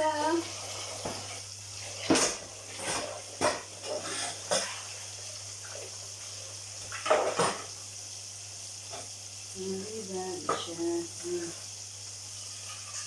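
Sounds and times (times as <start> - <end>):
frying sizzle: 0.0 - 13.0
dishes clattering in a sink: 0.2 - 5.9, 6.8 - 7.8, 10.4 - 10.8, 12.4 - 13.0.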